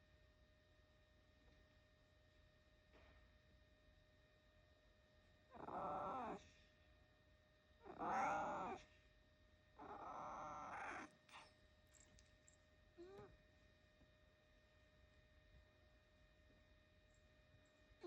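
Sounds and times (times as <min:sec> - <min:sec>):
cat meowing: 0:07.8 - 0:08.8, 0:09.8 - 0:11.1.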